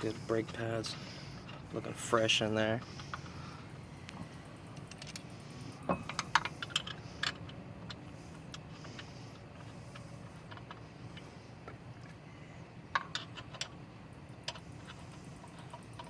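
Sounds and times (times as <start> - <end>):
lug nuts and tools clinking: 4.1 - 12.2, 12.9 - 16.0.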